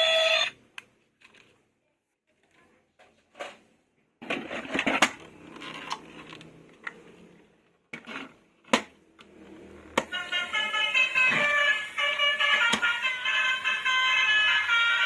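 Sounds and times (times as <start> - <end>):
tune playing: 10.1 - 15.0.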